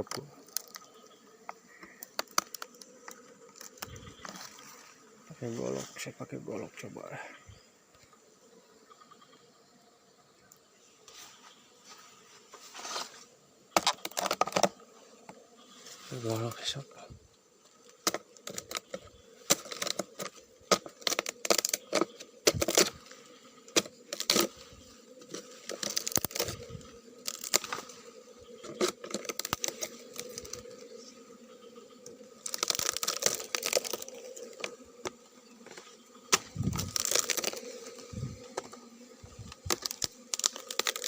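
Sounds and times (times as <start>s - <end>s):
fibrous wood tearing and cracking: 0.0s - 0.9s, 1.8s - 4.5s, 13.8s - 14.7s, 17.9s - 23.1s, 23.7s - 24.6s, 25.3s - 27.9s, 28.6s - 30.8s, 32.0s - 41.0s
machete chopping wood: 36.3s - 37.4s.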